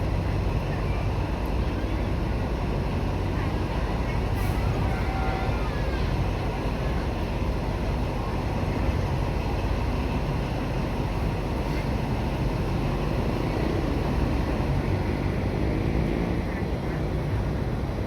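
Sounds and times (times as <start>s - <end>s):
vehicle rumble: 0.0s - 18.0s
faint voices: 0.1s - 18.0s.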